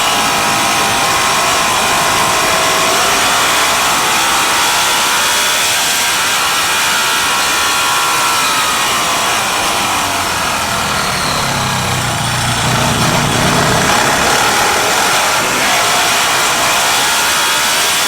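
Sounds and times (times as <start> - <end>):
racing motorcycle engines revving: 0.0 - 18.0
deeper engine note: 9.9 - 15.7.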